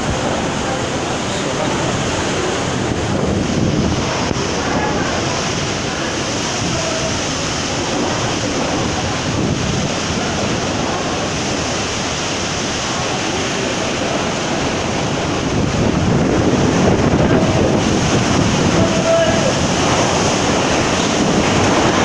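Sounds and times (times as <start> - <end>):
strong wind rushing: 0.0 - 22.0
surf: 0.0 - 22.0
wind buffeting microphone: 0.0 - 22.0.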